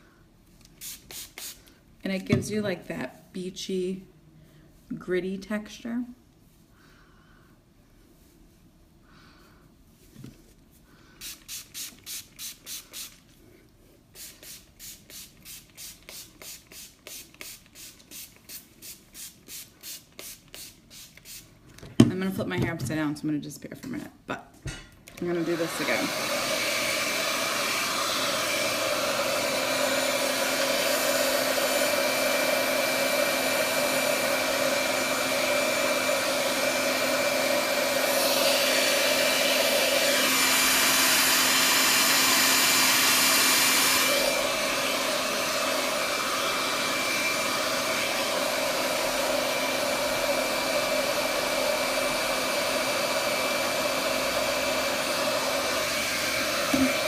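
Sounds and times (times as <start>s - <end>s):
hair dryer blowing: 11.2s - 13.2s, 14.1s - 21.4s, 25.1s - 57.0s.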